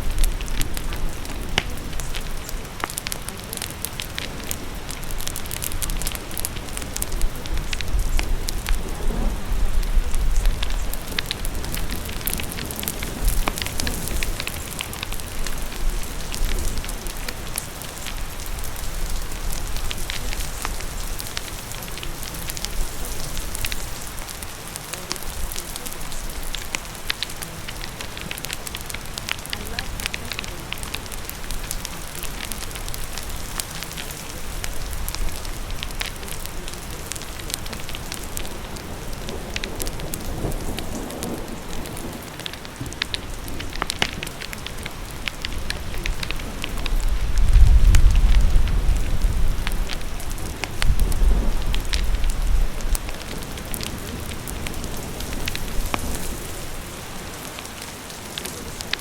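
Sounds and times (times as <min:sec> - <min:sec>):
crackling fire with pops: 0:00.0 - 0:59.0
steady rain: 0:00.0 - 0:59.0.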